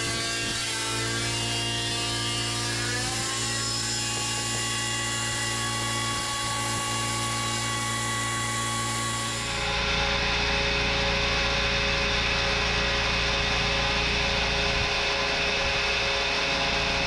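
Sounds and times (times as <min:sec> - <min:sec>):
thickness planer whine: 0:00.0 - 0:17.0.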